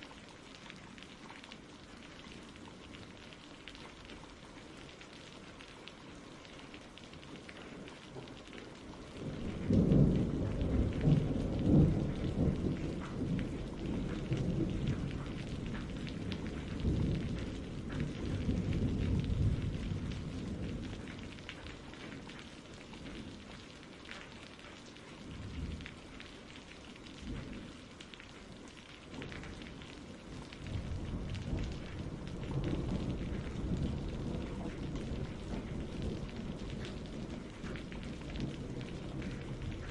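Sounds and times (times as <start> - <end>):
steady rain: 0.0 - 39.9
rolling thunder: 9.2 - 21.5, 30.3 - 39.9.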